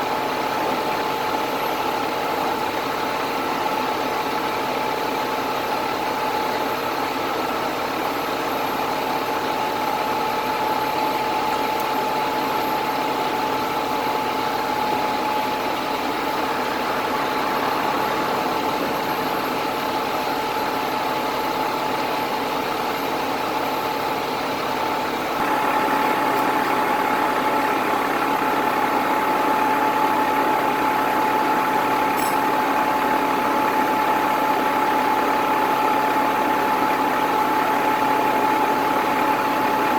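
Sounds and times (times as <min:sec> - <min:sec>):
large engine running: 0:00.0 - 0:39.9
steady whine: 0:10.2 - 0:35.0.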